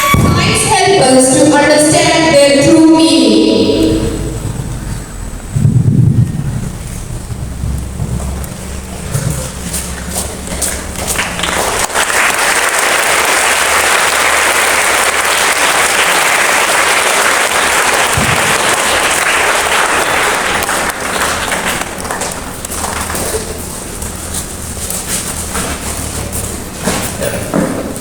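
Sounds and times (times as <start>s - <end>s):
audience clapping: 9.4s - 24.2s.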